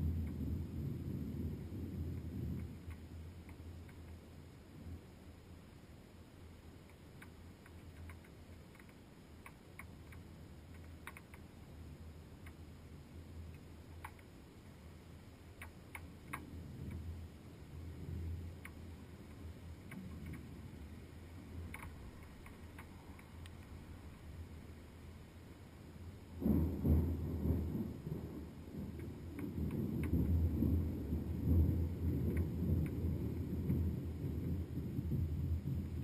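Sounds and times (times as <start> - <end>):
muffled low rumble: 0.0 - 36.0
light ticks: 2.1 - 4.2, 6.8 - 11.5, 13.5 - 14.3, 15.6 - 17.1, 18.6 - 20.5, 21.7 - 23.8, 28.9 - 30.3, 32.2 - 33.9.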